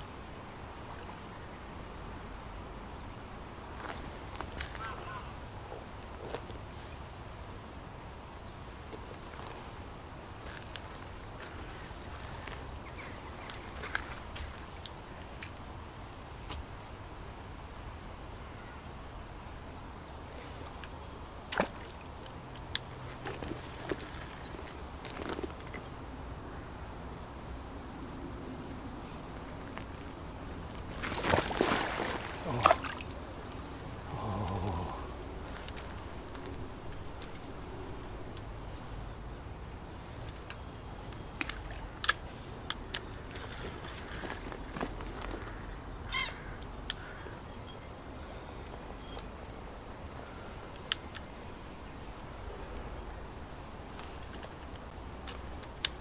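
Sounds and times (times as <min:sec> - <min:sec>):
steady low rumble: 0:32.0 - 0:43.3.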